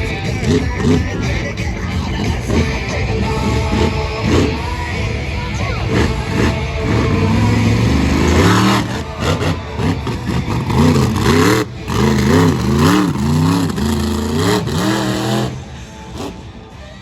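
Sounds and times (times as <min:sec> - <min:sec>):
engine revving in quick blips: 0:05.7 - 0:16.7.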